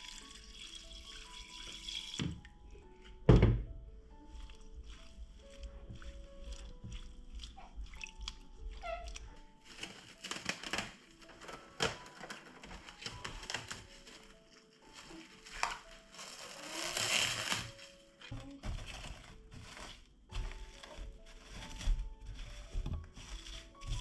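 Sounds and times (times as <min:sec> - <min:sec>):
soft music of held notes: 0:00.0 - 0:24.0
rustling: 0:04.1 - 0:24.0.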